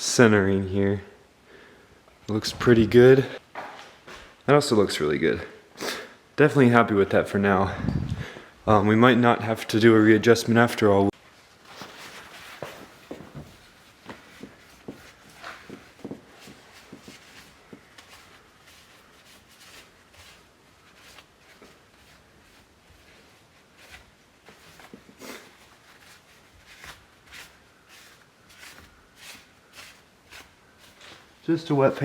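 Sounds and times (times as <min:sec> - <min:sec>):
paper towel rubbing: 0:11.7 - 0:32.0.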